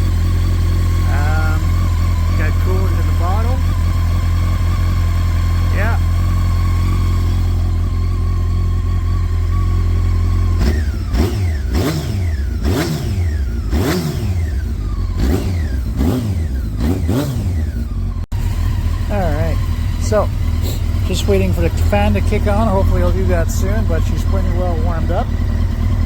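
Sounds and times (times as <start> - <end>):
motorcycle engine idling and revving: 0.0 - 26.0.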